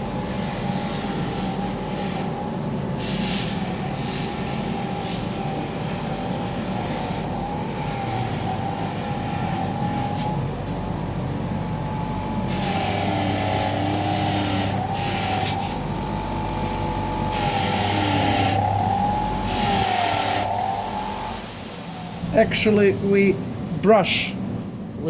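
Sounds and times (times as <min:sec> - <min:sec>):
bench grinder motor whine: 0:04.6 - 0:23.2
wire brush scrubbing metal: 0:12.5 - 0:16.3, 0:17.2 - 0:21.2.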